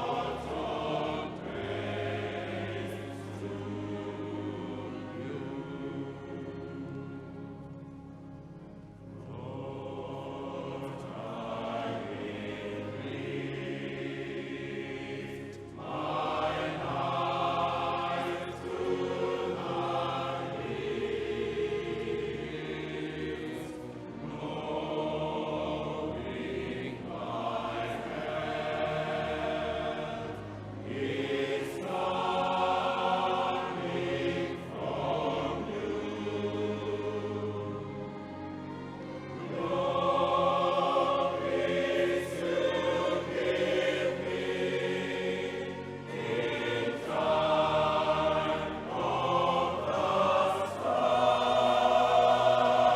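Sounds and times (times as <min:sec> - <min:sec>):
choir singing: 0:00.0 - 0:52.9.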